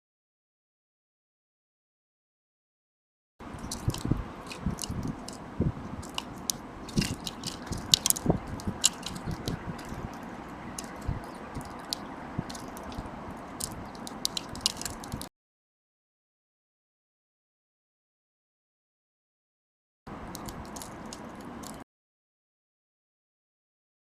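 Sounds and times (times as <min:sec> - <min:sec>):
animal crunching dry food: 0:03.6 - 0:05.4, 0:06.0 - 0:10.2, 0:13.6 - 0:15.3.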